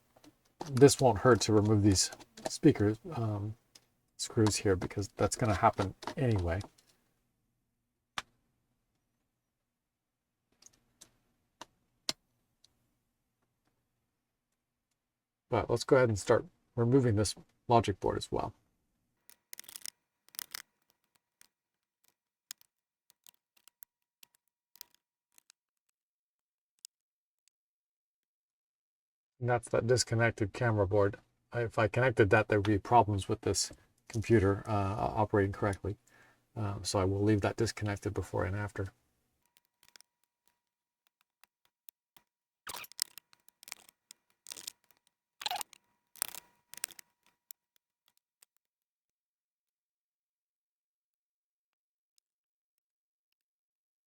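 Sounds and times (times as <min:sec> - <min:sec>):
small tool scrapes: 0:19.3 - 0:25.6, 0:39.5 - 0:40.1, 0:42.7 - 0:48.6
small clicks of parts handled: 0:19.3 - 0:26.0, 0:39.5 - 0:48.6.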